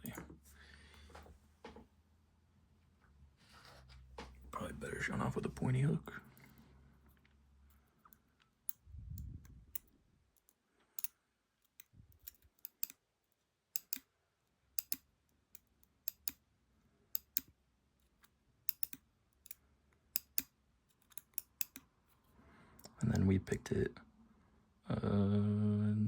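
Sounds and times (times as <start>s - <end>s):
tools clicking on hard surface: 9.8s - 13.0s, 13.8s - 14.0s, 14.8s - 15.0s, 18.1s - 19.6s, 20.2s - 21.9s.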